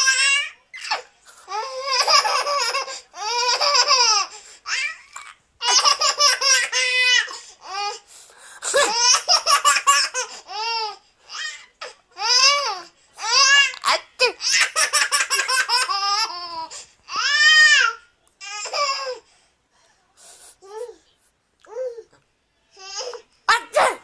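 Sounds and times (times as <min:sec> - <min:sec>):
baby girl laughing: 0:08.6 - 0:10.9.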